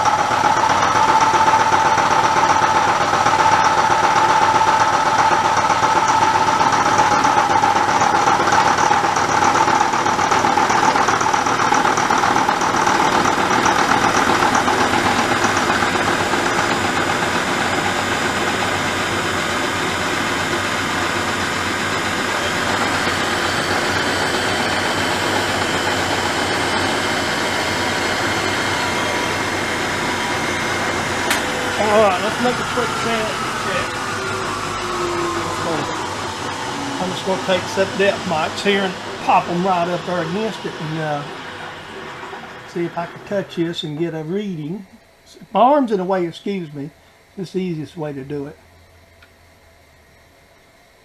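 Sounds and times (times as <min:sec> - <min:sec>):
milling machine whine: 0:00.0 - 0:51.0.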